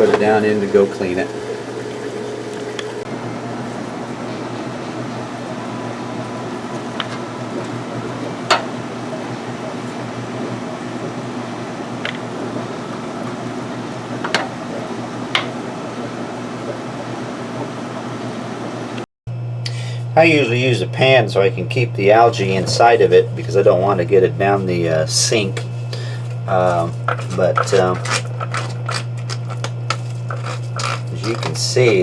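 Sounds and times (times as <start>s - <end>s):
steady mechanical hum: 0.0s - 32.0s.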